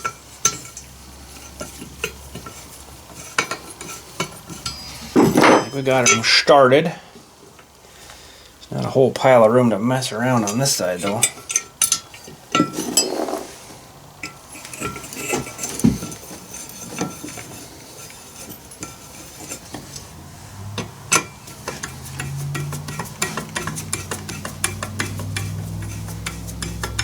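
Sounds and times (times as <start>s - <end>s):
metal clicks of hand tools: 21.1s - 27.0s.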